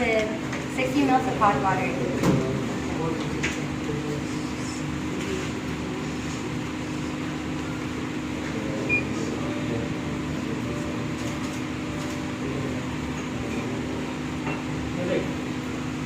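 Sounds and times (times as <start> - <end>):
low mechanical hum with hiss: 0.0 - 16.0.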